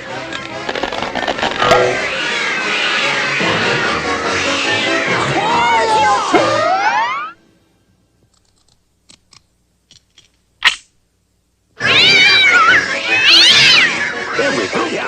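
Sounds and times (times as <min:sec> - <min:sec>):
cats yowling and screeching: 0:02.0 - 0:07.4, 0:11.8 - 0:14.9.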